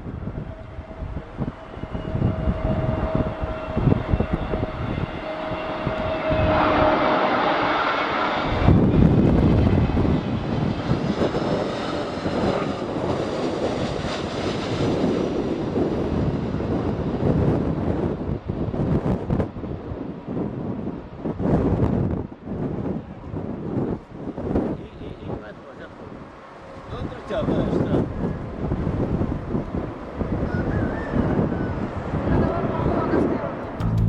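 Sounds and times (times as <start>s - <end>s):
wind buffeting microphone: 0.0s - 7.0s, 8.3s - 25.4s, 26.0s - 34.0s
jet engines whining: 0.6s - 14.9s.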